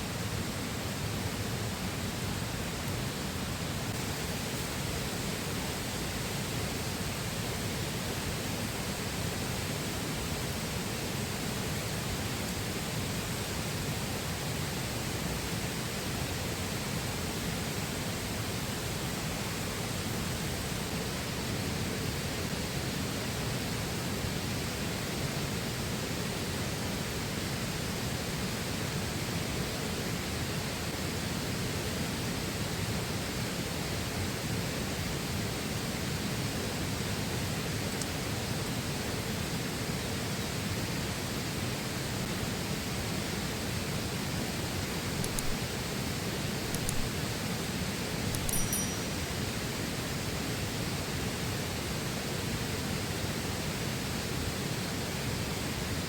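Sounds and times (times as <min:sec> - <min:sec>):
short sharp clicks: 0:45.2 - 0:45.6, 0:46.7 - 0:47.2.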